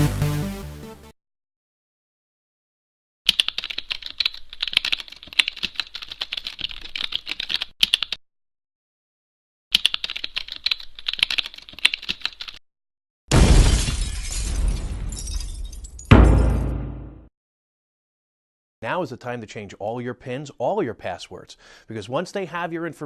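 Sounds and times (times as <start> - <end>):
computer keyboard typing: 3.3 - 8.2, 9.7 - 12.6.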